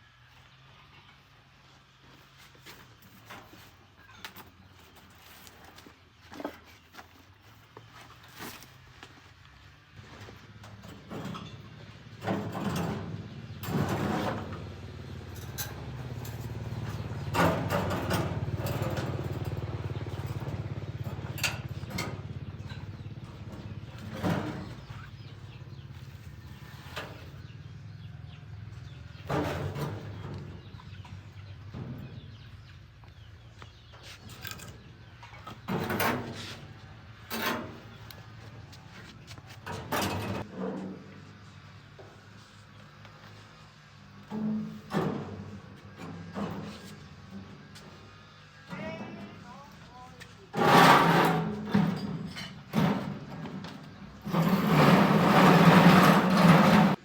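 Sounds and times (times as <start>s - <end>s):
knocks and clatters: 10.2s - 27.6s, 28.8s - 32.6s, 50.5s - 57.0s.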